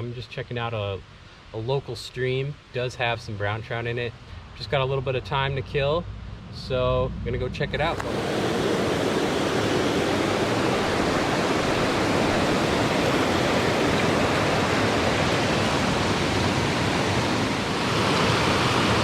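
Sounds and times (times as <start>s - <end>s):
stream water rushing: 7.8s - 19.0s.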